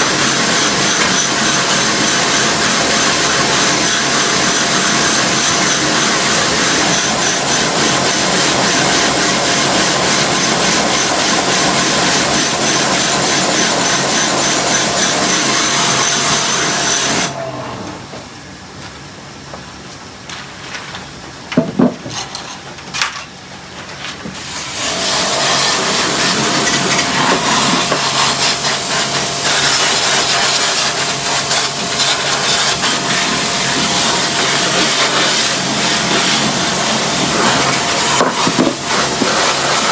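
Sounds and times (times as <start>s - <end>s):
pressure washer motor hum: 0.0s - 17.7s, 24.4s - 39.9s
knocks: 21.6s - 22.1s
hiss of spray: 25.4s - 38.2s, 38.9s - 39.9s.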